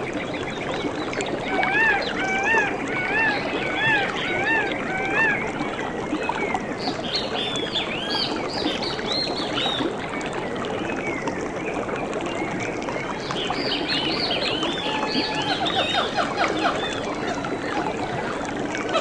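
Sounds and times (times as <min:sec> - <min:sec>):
running water: 0:00.0 - 0:19.0
birds chirping: 0:13.3 - 0:19.0.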